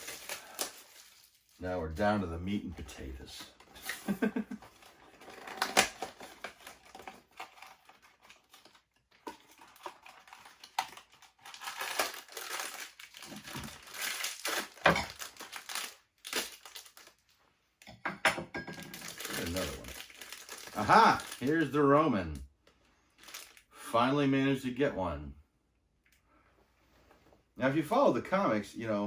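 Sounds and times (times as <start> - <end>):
cardboard and plastic wrapper crinkling: 0.0 - 17.4, 18.7 - 21.8, 23.1 - 23.7.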